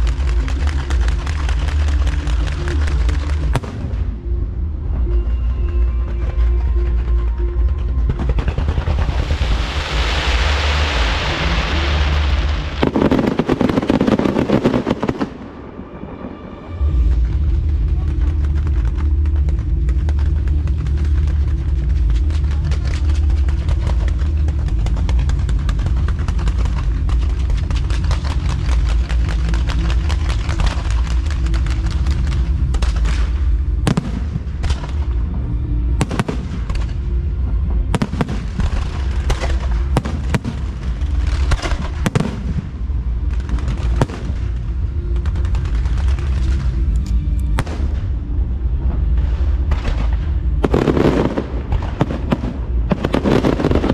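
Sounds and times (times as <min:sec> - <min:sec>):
fireworks bursting and crackling: 0:00.0 - 0:04.2, 0:05.2 - 0:16.2, 0:16.8 - 0:53.9
sharp firework bangs: 0:08.4 - 0:15.4.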